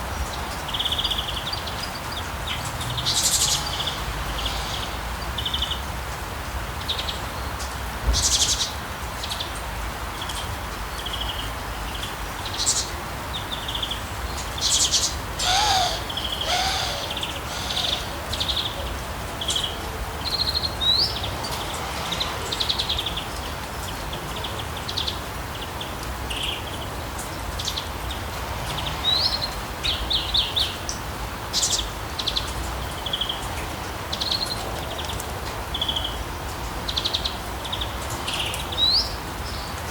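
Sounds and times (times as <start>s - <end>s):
rain hiss: 0.0s - 39.9s
songbirds chirping: 0.0s - 39.9s
louder low bird calls: 14.6s - 19.0s.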